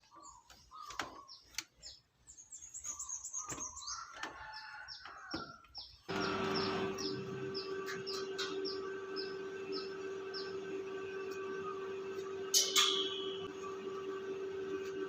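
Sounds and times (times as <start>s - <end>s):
birds chirping: 0.0s - 13.5s
steady hum: 6.1s - 15.0s.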